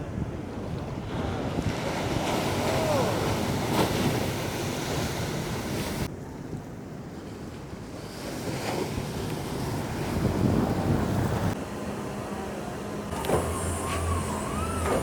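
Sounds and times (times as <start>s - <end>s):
wind buffeting microphone: 0.0s - 11.6s
ocean wave breaking: 0.8s - 6.1s, 7.9s - 15.0s.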